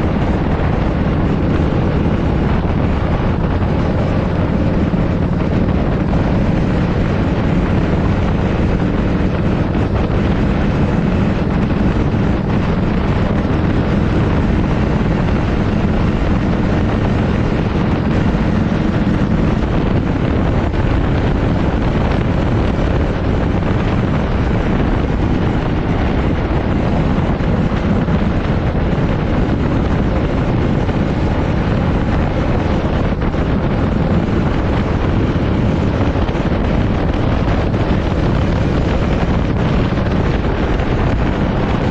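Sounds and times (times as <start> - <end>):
motorcycle engine running: 0.0 - 41.9
wind noise on microphone: 0.0 - 41.9.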